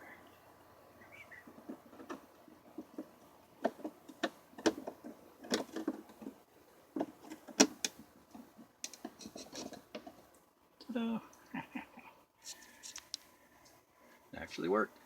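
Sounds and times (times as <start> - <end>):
small hard parts clicking: 1.5 - 10.4.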